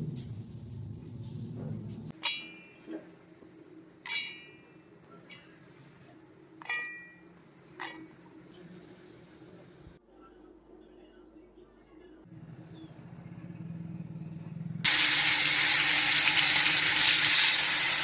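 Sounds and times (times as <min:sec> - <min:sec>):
utensil clinking against dish: 0:06.6 - 0:07.2.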